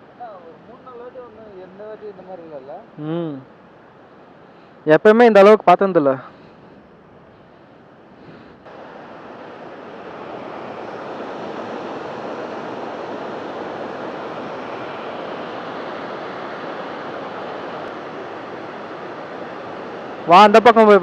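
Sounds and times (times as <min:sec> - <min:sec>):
heavy water rushing at a dam: 0:08.7 - 0:21.0.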